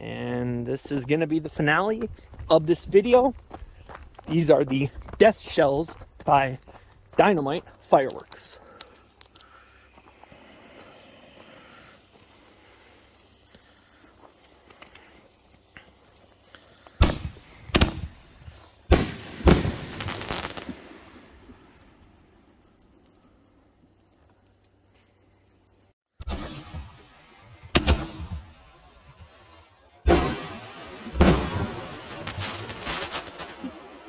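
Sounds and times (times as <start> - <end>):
fireworks crackling: 0.0 - 9.2, 9.9 - 22.7, 26.2 - 34.0
crickets chirping: 0.0 - 34.0
fireworks shells banging: 17.0 - 21.8, 26.2 - 34.0.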